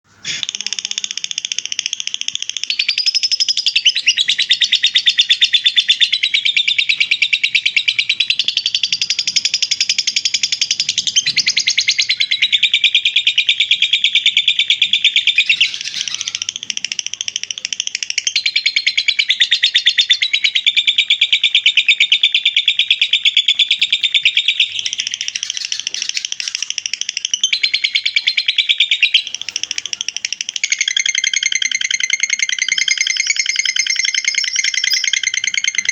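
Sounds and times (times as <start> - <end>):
lovebird chatter: 0.2 - 35.9.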